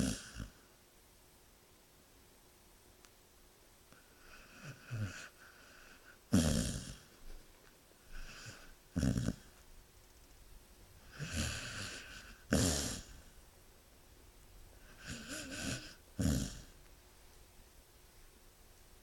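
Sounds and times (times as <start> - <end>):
animal snoring: 0.0 - 0.6, 4.2 - 7.2, 8.1 - 9.6, 11.0 - 13.4, 14.8 - 16.8.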